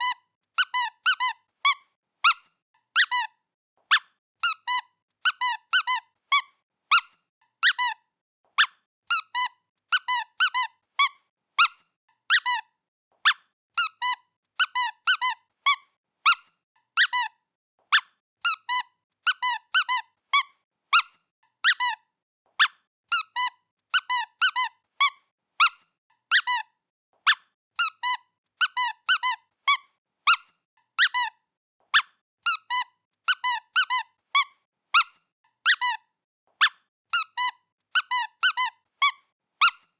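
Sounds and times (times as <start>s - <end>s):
squeaky toy squeaking: 0.0s - 39.9s.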